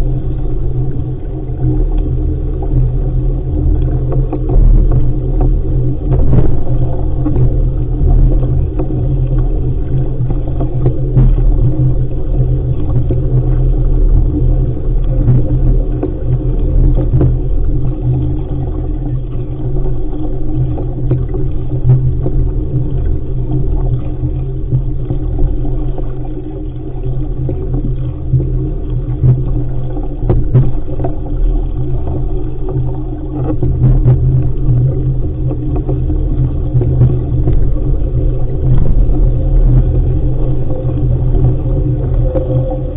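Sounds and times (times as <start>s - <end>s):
wind buffeting microphone: 0.0s - 19.2s, 30.0s - 42.9s.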